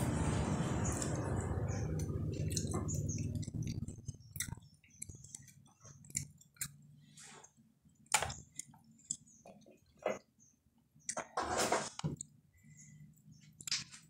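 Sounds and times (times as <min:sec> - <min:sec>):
person chewing food: 0:00.5 - 0:10.4.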